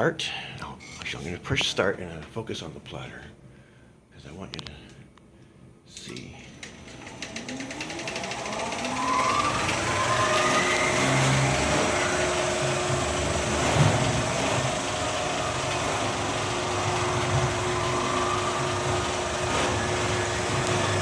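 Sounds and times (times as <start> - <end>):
film projector motors whirring: 6.4 - 21.0.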